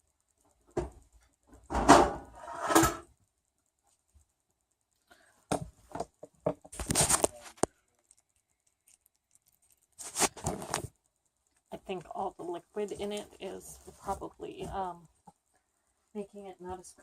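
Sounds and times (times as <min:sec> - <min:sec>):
cookware clicking and scraping: 0:01.7 - 0:03.1.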